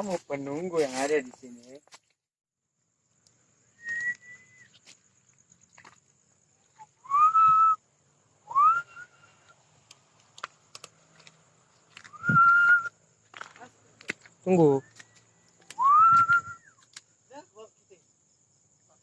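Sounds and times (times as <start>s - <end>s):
loud whistled notes: 3.8s - 4.8s, 6.8s - 7.8s, 8.5s - 9.3s, 12.1s - 13.0s, 15.7s - 16.8s.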